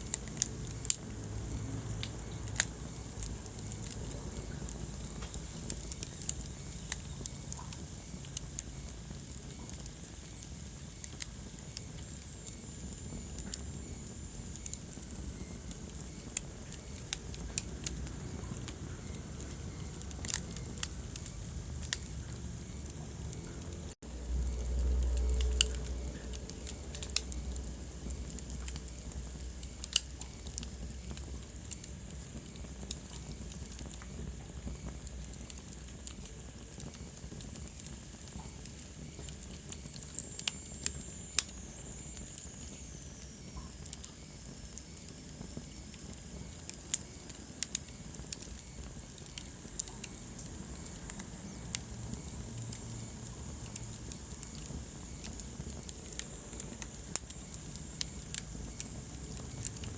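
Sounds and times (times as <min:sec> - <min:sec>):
fire crackling and popping: 0:00.0 - 0:59.9
wood fire hissing: 0:00.0 - 0:59.9.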